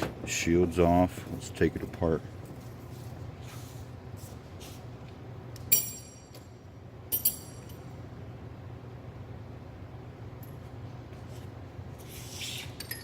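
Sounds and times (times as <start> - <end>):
steady low hum: 0.0 - 13.0
metal tools clinking: 5.7 - 6.5, 7.1 - 7.9.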